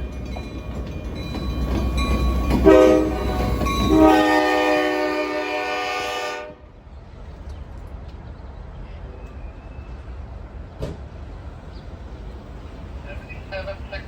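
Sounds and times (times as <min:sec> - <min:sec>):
locomotive air horn chord: 0:02.6 - 0:06.7.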